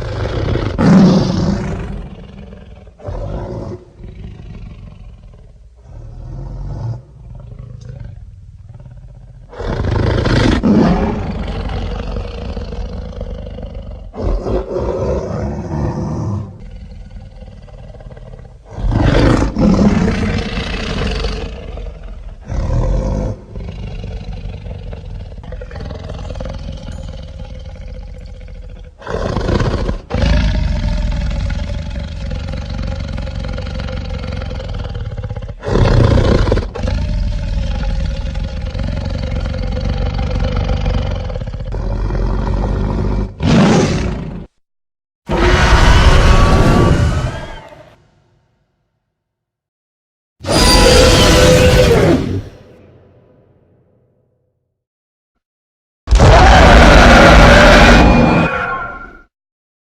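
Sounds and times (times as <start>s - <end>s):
monster growls: 45.3s - 48.0s
monster roars: 45.3s - 48.0s, 50.4s - 53.1s, 56.1s - 59.3s.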